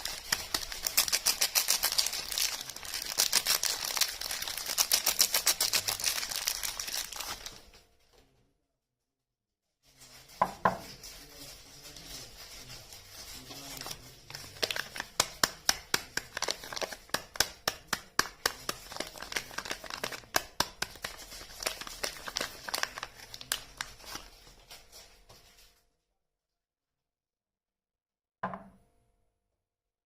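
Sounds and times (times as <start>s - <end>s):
wrapper crinkling and tearing: 0.0s - 7.8s, 11.9s - 24.9s.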